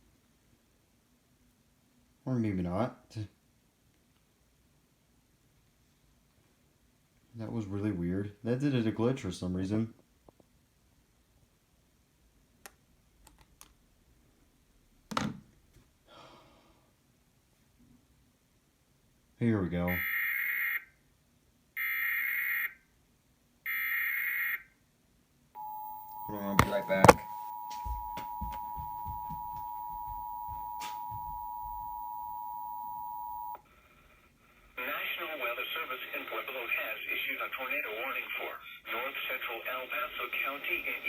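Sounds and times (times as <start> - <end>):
two-tone alert alarm: 25.6 - 33.6.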